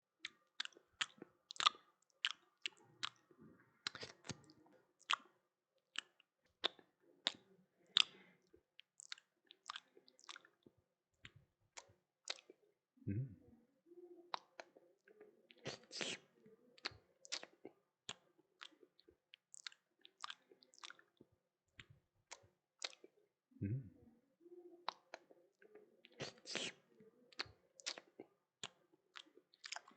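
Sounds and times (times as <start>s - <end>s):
wet lip smacks: 0.2s - 3.2s, 3.8s - 5.3s, 21.8s - 23.1s, 26.1s - 29.9s
wet lip smacking and chewing: 0.2s - 12.6s, 14.3s - 23.2s, 24.8s - 29.9s.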